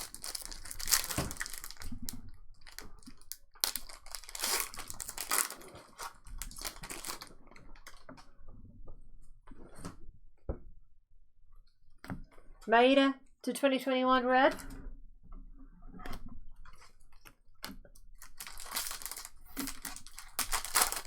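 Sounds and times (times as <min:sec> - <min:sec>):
wrappers crinkling and tearing: 0:00.0 - 0:07.4, 0:18.2 - 0:21.0.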